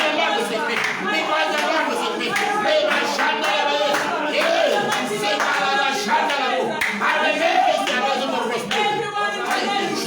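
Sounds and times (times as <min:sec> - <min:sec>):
hand clapping: 0:00.0 - 0:07.2
congregation praying aloud: 0:00.0 - 0:10.0.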